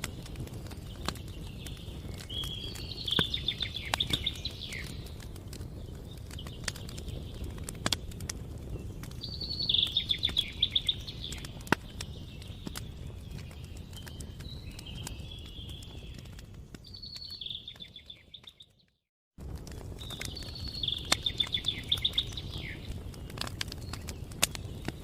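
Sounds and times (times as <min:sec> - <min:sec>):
campfire crackling and popping: 0:00.0 - 0:25.0
songbird trilling: 0:02.2 - 0:05.0, 0:09.3 - 0:11.6, 0:20.3 - 0:22.9.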